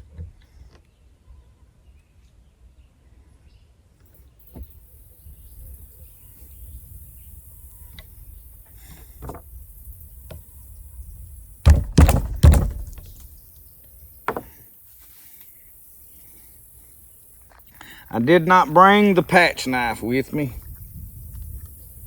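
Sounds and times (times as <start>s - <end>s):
sharp knocks: 11.6s - 13.3s.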